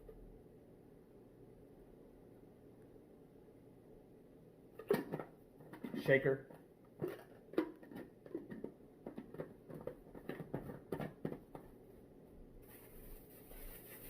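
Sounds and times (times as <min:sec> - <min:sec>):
plastic shaker taps and rustles: 0:04.8 - 0:11.8.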